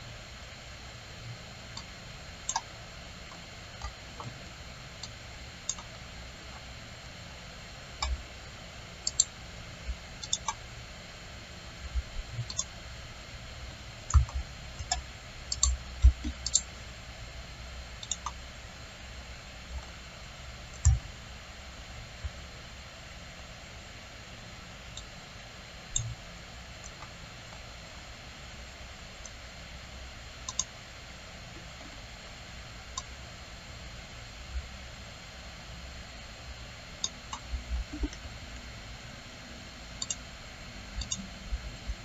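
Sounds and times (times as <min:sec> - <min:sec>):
computer mouse clicking: 0:01.8 - 0:02.7, 0:05.0 - 0:06.0, 0:09.0 - 0:09.4, 0:10.2 - 0:10.6, 0:12.4 - 0:12.8, 0:14.0 - 0:16.7, 0:18.0 - 0:18.4, 0:20.7 - 0:21.1, 0:24.9 - 0:25.1, 0:25.9 - 0:26.2, 0:30.4 - 0:30.8, 0:32.9 - 0:33.2, 0:37.0 - 0:38.3, 0:40.0 - 0:40.3, 0:41.0 - 0:41.4.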